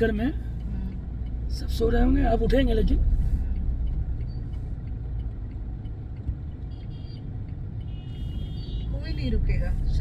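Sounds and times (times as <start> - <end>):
engine and tyre rumble: 0.0 - 10.0.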